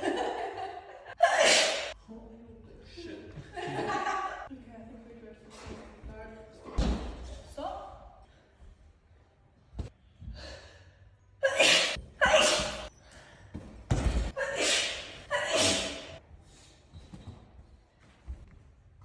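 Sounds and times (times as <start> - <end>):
woman sneezing: 1.2 - 2.0, 11.4 - 12.9, 14.4 - 16.2.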